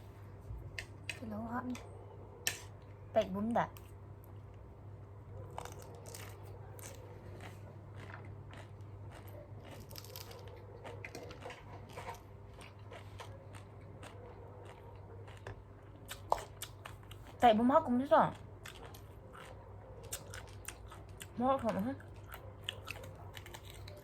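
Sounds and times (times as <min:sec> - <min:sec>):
person chewing crunchy cabbage: 0:05.4 - 0:17.4, 0:18.3 - 0:21.4, 0:22.0 - 0:24.0.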